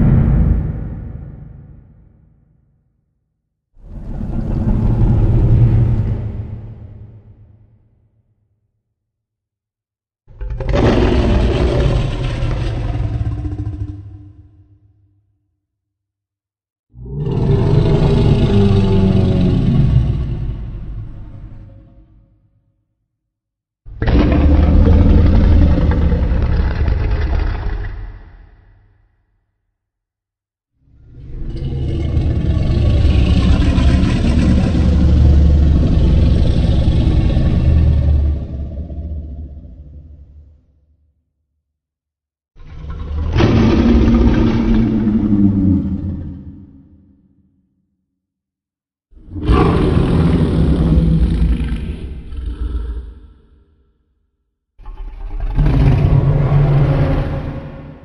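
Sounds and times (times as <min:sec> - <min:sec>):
loud deep rumble: 0:00.0 - 0:02.4, 0:03.9 - 0:07.6, 0:31.4 - 0:40.0
loud low monster rumble: 0:00.0 - 0:02.6, 0:03.8 - 0:08.0, 0:10.4 - 0:14.5, 0:17.0 - 0:22.1, 0:23.9 - 0:28.0, 0:31.0 - 0:40.7, 0:42.6 - 0:47.2, 0:49.2 - 0:53.6, 0:54.9 - 0:58.0.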